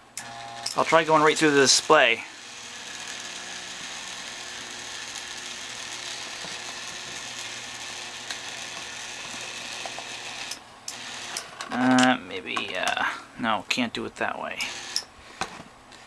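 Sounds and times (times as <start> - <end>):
electric actuator motor running: 0.2 - 11.6, 14.6 - 15.0.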